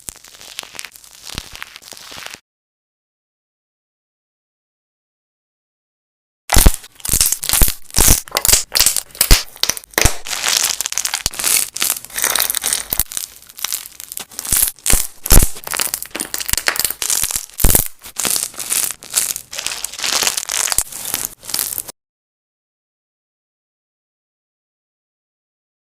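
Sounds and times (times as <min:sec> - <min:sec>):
slime crackling and popping: 0:00.0 - 0:02.4, 0:06.5 - 0:21.9.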